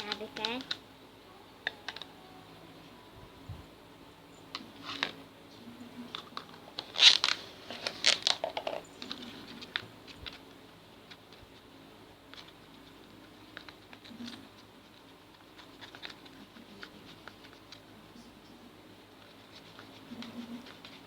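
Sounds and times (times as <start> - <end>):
scraping and crinkling: 4.5 - 5.2, 5.9 - 11.7, 12.3 - 21.0.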